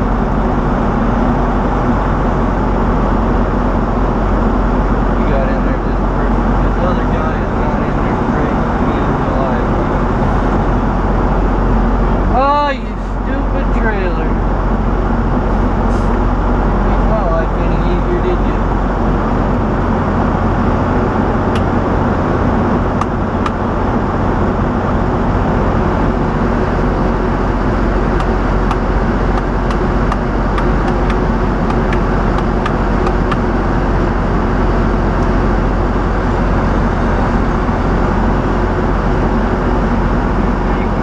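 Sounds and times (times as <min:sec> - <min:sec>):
vehicle engine and road noise: 0:00.0 - 0:41.0.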